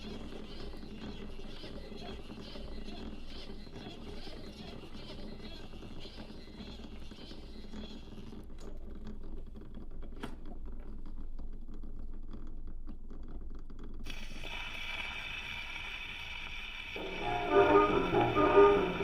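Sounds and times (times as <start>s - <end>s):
vinyl crackles and clicks: 4.8s - 19.0s
bright hiss: 14.3s - 19.0s
low hum: 17.0s - 19.0s.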